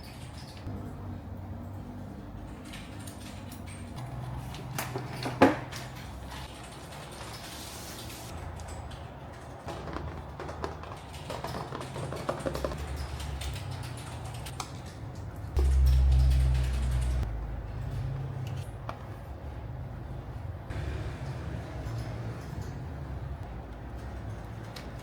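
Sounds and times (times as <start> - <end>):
computer parts clicking and rattling: 0.0 - 0.8, 1.6 - 19.2, 21.3 - 25.0
low steady hum: 15.5 - 21.8.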